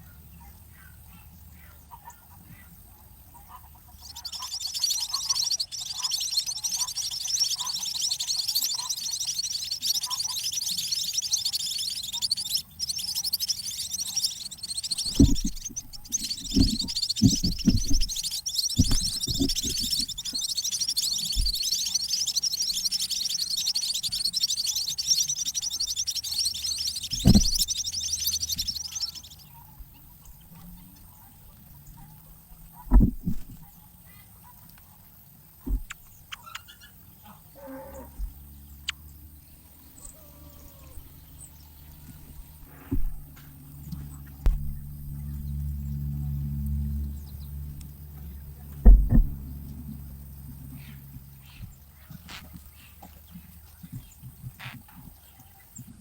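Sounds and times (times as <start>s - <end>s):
nestlings begging calls: 0.4s - 56.0s
dull thumps: 14.9s - 20.5s, 21.3s - 21.7s, 27.1s - 27.8s, 32.6s - 33.7s, 35.6s - 36.1s, 42.0s - 55.2s.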